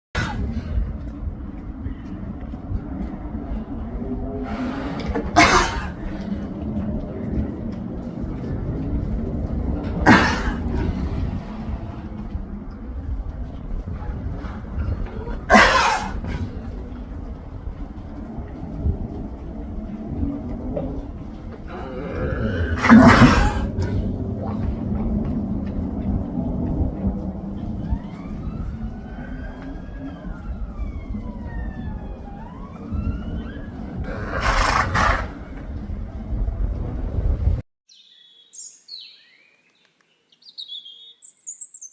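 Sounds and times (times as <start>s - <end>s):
low rumble: 0.2s - 37.6s
horse coughing: 4.9s - 6.2s, 9.9s - 11.0s, 15.0s - 16.5s, 22.7s - 24.1s
siren wailing: 26.2s - 36.4s.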